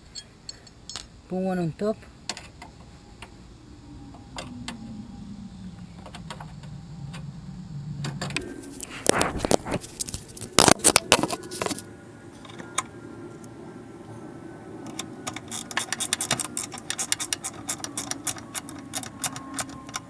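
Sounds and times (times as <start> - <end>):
faint low hum: 0.0 - 20.0
metal hardware clinking: 14.8 - 20.0.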